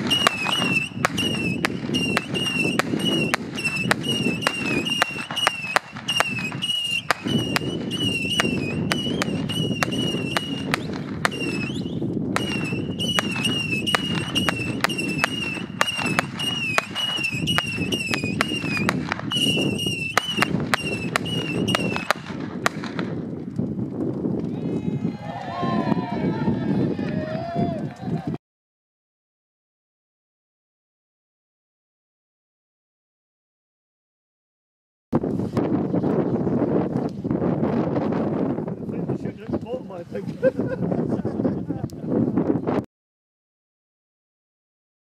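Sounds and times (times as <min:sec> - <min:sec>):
high wavering whistle: 0:00.0 - 0:22.1
fireworks cracking: 0:00.0 - 0:24.0.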